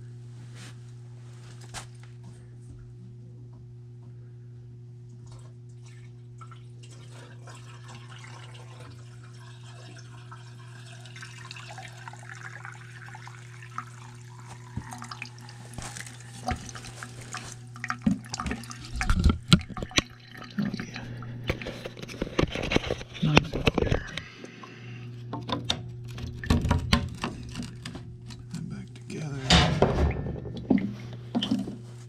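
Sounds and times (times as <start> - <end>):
steady low hum: 0.0 - 9.4, 12.3 - 32.0
water trickling from drain line: 5.2 - 21.6.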